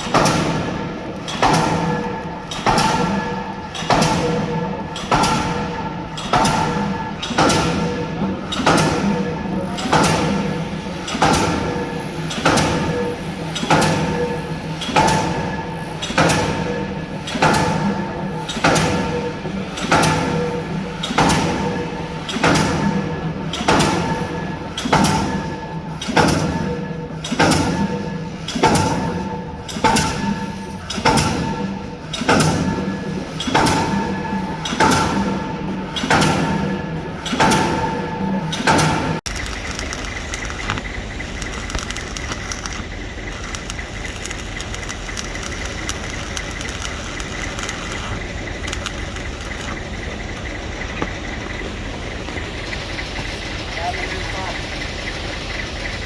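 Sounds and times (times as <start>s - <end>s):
steady hum: 39.2s - 53.7s
machine drone: 39.2s - 56.0s.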